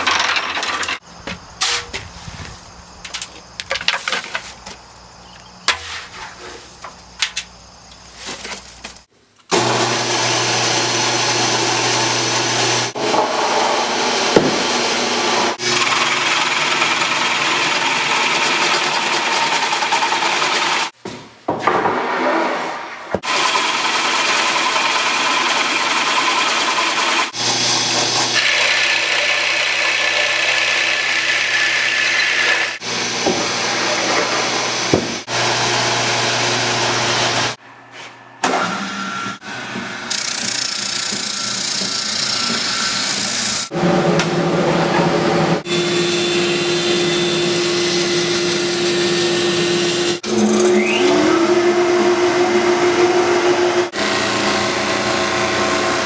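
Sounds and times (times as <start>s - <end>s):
workshop power tools running: 9.5s - 21.0s, 23.2s - 56.0s.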